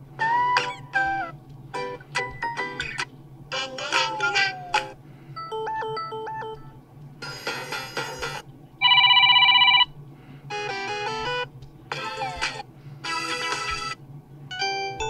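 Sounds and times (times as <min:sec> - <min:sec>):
electronic ringtone melodies: 0:05.4 - 0:06.8, 0:08.8 - 0:09.9, 0:10.5 - 0:11.5
warbling telephone ring tone: 0:08.8 - 0:10.7.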